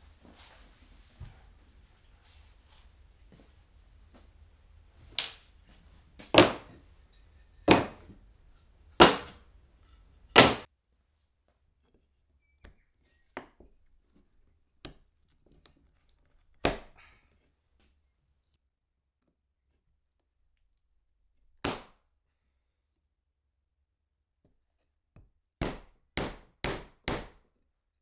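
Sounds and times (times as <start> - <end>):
knocks on wood: 6.3 - 6.8, 7.7 - 8.2, 9.0 - 9.4, 10.4 - 10.7.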